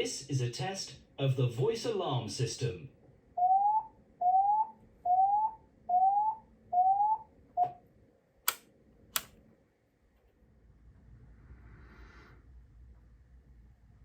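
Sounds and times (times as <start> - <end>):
alarm tone rising sweeps: 3.4 - 7.7
sharp clicks: 8.4 - 9.4.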